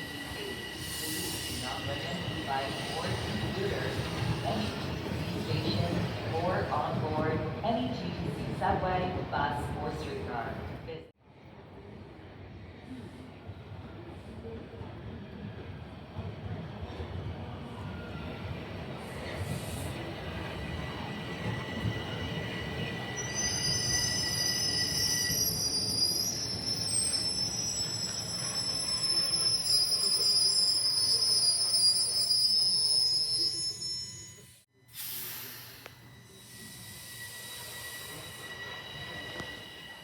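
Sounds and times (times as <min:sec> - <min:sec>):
train wheels squealing on rails: 0:00.0 - 0:06.9, 0:16.5 - 0:40.0.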